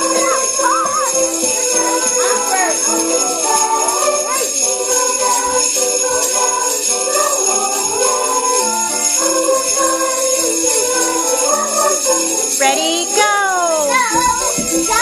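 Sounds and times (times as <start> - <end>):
melodic music: 0.0 - 15.0
sleigh bells shaken: 0.0 - 15.0.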